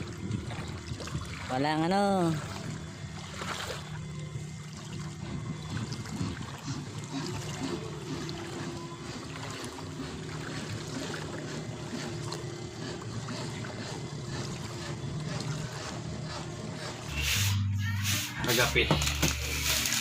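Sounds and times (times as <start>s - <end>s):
water splashing and trickling: 0.0s - 16.3s, 18.2s - 20.0s
boat motor humming: 0.0s - 20.0s.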